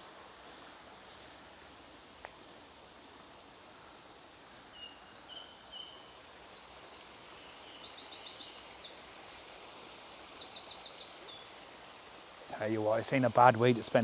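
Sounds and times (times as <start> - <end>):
stream flowing: 0.0 - 14.0
songbird singing: 0.8 - 1.9, 4.7 - 11.6.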